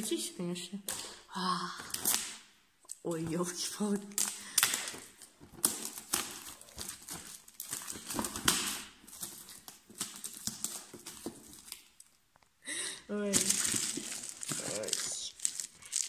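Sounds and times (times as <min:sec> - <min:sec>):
packaging crinkling and rustling: 0:03.5 - 0:12.5, 0:13.2 - 0:16.0.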